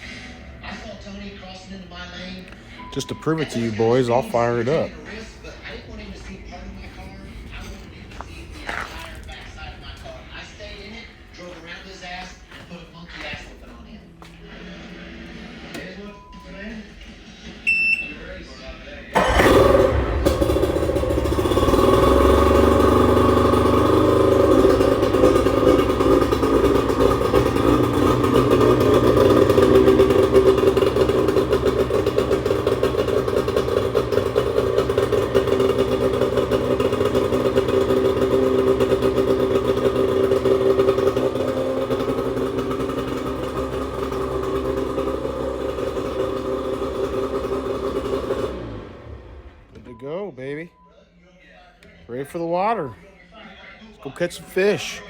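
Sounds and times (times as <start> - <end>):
outboard motor running: 19.2 - 49.7.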